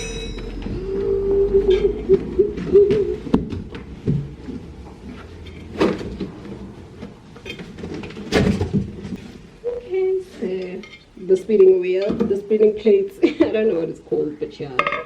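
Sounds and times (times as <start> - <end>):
low rumbling: 0.0 - 9.8.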